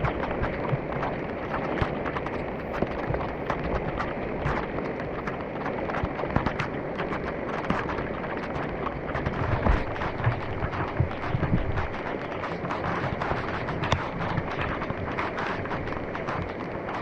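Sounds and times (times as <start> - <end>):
low thumps on microphone: 8.8 - 16.7.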